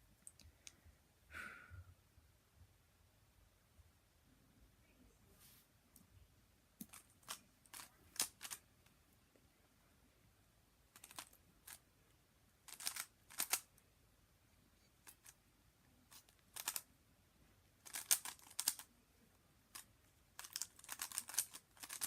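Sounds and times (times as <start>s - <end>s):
puzzle cube clicking turns: 6.8s - 8.6s, 11.0s - 11.8s, 12.7s - 13.7s, 15.0s - 15.4s, 16.1s - 16.9s, 17.8s - 18.9s, 19.7s - 22.0s.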